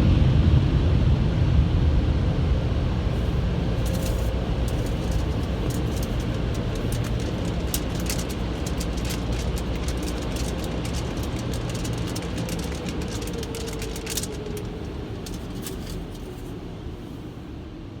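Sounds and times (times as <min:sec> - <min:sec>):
car wash machine rumble: 0:03.0 - 0:16.6.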